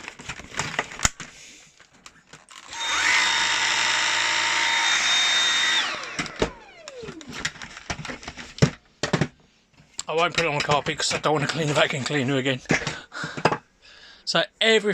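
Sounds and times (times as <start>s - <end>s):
vacuum cleaner motor whine: 2.7s - 7.5s
handling knocks and clicks: 6.1s - 13.7s.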